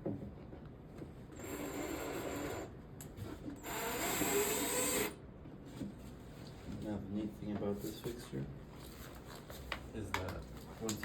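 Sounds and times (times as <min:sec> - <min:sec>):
power drill driving screw into drywall: 0:03.6 - 0:05.2.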